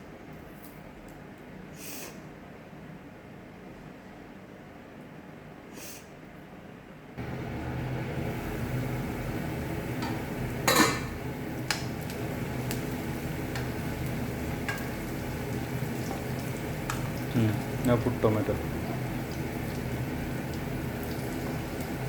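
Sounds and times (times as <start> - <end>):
food frying in a pan: 7.2 - 22.0.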